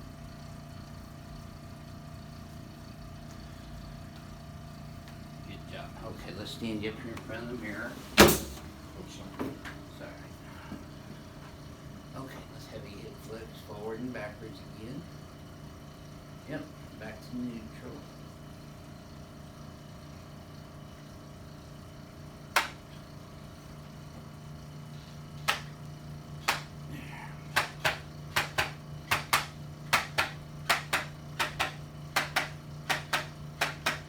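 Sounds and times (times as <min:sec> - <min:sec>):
steady low hum: 0:00.0 - 0:34.0
sharp clicks: 0:25.4 - 0:25.7, 0:26.4 - 0:26.7, 0:27.5 - 0:34.0.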